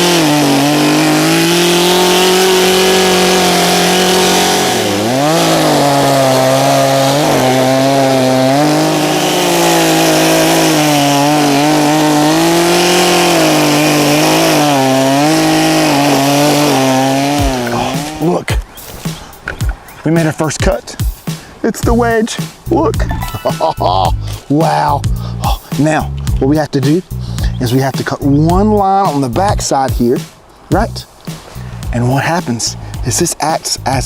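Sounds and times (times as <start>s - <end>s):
chainsaw cutting wood: 0.0s - 21.5s.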